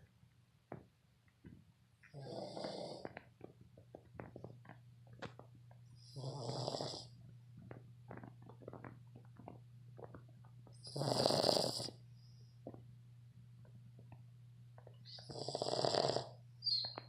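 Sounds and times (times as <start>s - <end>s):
dog snoring: 2.1s - 3.3s, 6.0s - 7.2s, 10.8s - 12.0s, 15.1s - 16.4s.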